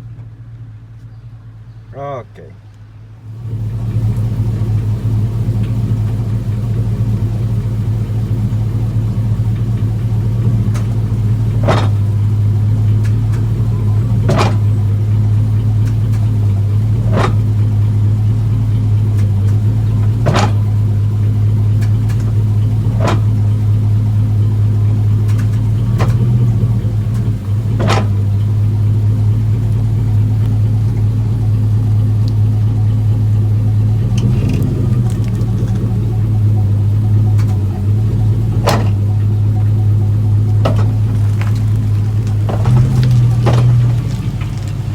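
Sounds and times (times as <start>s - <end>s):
pickup engine idling: 0.0s - 44.9s
sharp clicks: 25.2s - 28.5s.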